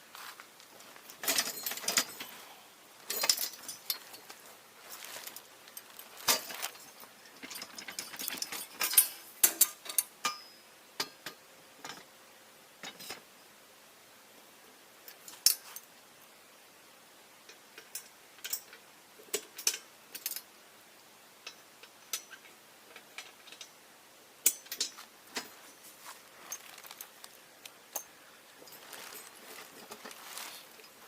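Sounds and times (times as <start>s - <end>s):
metal frame parts clinking: 0.8s - 2.4s, 3.0s - 12.1s, 15.1s - 15.8s, 17.5s - 20.5s, 24.4s - 27.2s, 27.8s - 31.0s.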